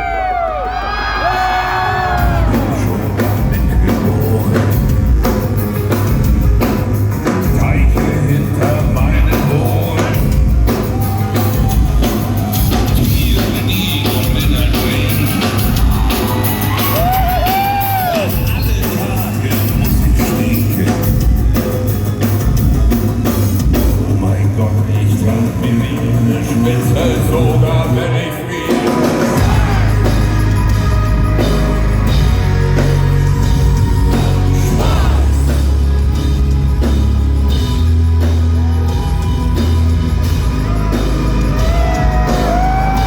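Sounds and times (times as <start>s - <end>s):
heavy rock band playing: 0.0s - 43.0s
pounding drum beat: 1.0s - 28.0s, 28.6s - 43.0s.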